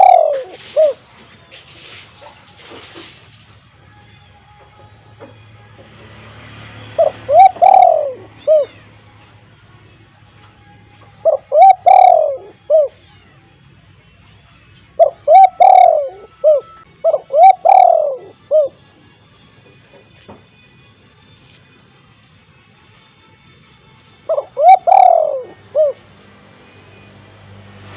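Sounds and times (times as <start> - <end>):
dove cooing: 0.0 - 1.1, 6.9 - 8.9, 11.2 - 13.0, 15.0 - 18.8, 24.3 - 26.1.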